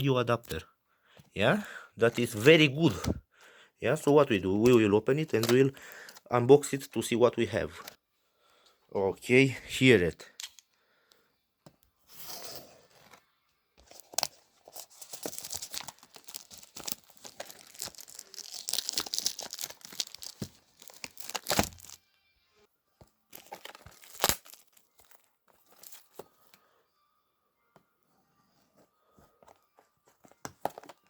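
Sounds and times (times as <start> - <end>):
packaging crinkling and tearing: 5.1 - 6.2, 13.8 - 22.0, 23.3 - 26.2.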